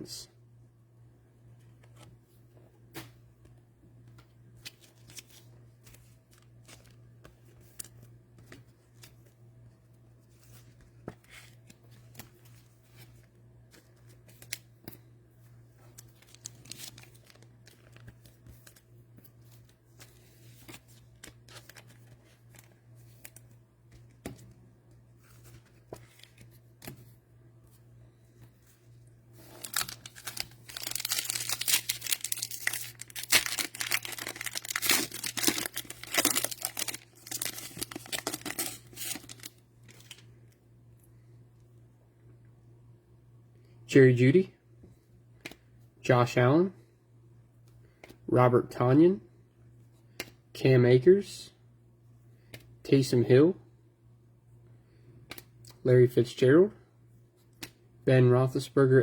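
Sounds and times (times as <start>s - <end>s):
plastic wrapper crinkling: 16.0s - 18.8s, 29.4s - 40.2s.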